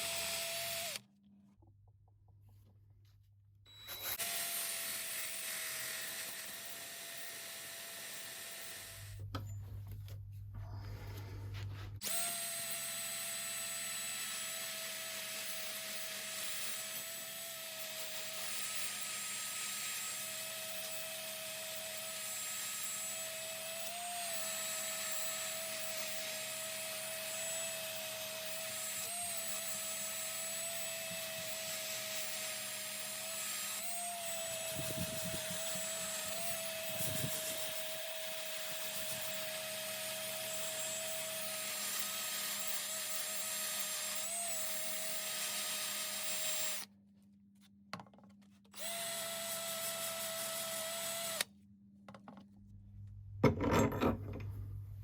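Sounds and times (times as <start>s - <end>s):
small power tool whining: 0.0s - 1.1s, 3.7s - 9.6s, 12.0s - 46.9s, 48.7s - 51.5s.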